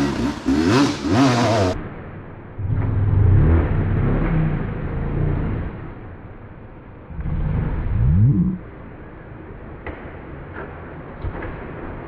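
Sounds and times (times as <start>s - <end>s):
dirt bike engine revving: 0.0s - 1.8s.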